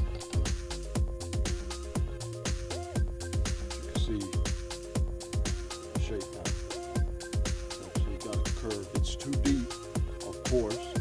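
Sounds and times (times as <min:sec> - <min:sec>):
electronic music with kick drum: 0:00.0 - 0:11.0.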